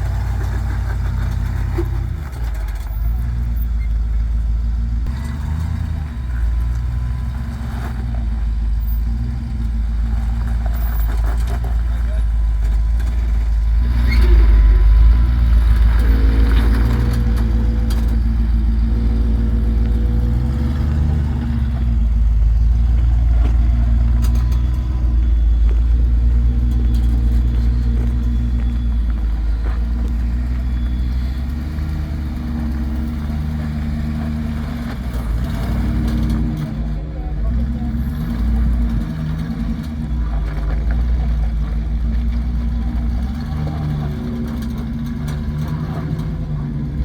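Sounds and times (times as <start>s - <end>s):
off-road vehicle engine under load: 0.0s - 47.0s.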